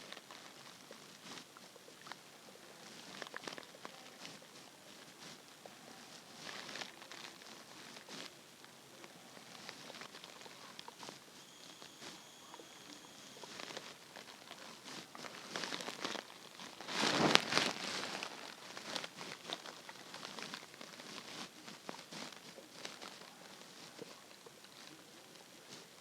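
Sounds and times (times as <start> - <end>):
stomach gurgling: 0.0 - 8.3.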